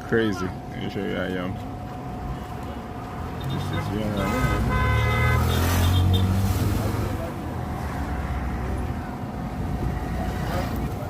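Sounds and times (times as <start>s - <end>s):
car engine and road rumble: 0.0s - 11.0s
vehicle horn tooting: 3.4s - 6.3s.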